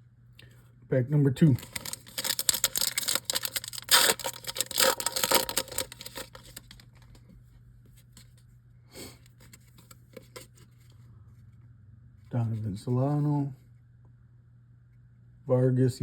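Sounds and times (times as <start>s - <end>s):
foil wrapper tearing and crinkling: 1.4s - 6.8s
cards being handled: 1.5s - 7.2s.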